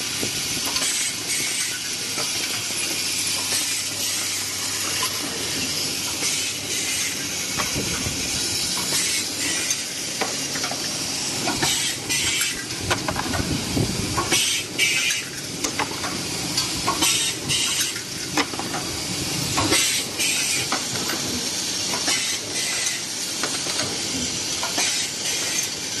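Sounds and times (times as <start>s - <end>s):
welder hissing and sizzling: 0.0s - 10.4s, 11.0s - 12.8s, 16.2s - 18.0s, 19.6s - 26.0s
steady machine noise: 0.0s - 26.0s.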